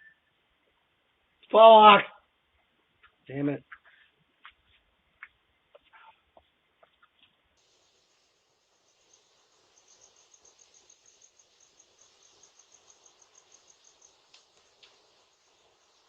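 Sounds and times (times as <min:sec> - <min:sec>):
cricket chirping: 0:07.6 - 0:16.0
low hiss: 0:07.6 - 0:16.0
faint clicks: 0:13.0 - 0:15.0.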